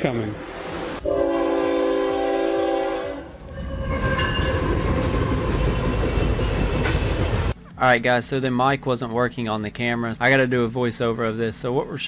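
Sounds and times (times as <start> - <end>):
train rumbling past: 0.0 - 7.6
train horn chord: 1.0 - 4.6.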